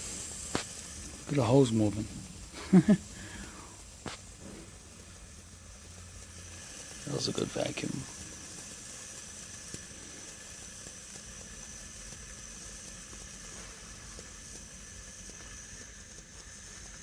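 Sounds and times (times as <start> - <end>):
refrigerant hissing through hose: 0.0 - 17.0.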